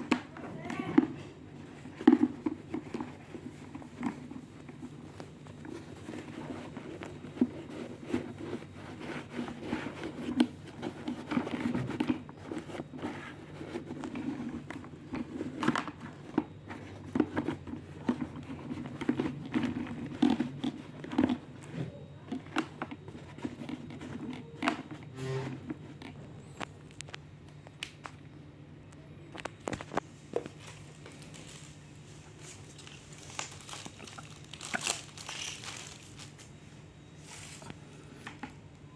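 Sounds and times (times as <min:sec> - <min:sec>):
packaging crinkling: 0:29.4 - 0:36.6.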